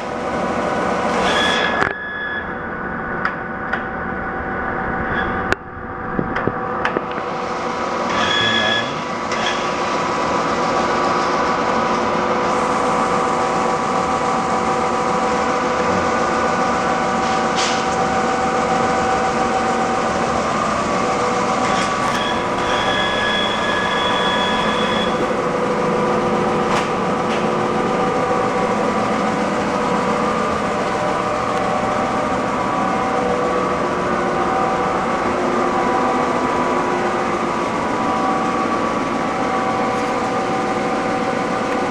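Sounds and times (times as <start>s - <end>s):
lathe gearing whine: 0.0s - 41.9s
higher tone: 21.0s - 41.9s.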